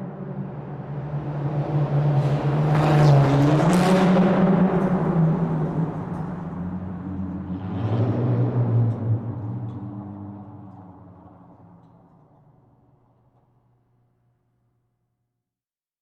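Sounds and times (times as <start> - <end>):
road and air rush: 0.0 - 12.8.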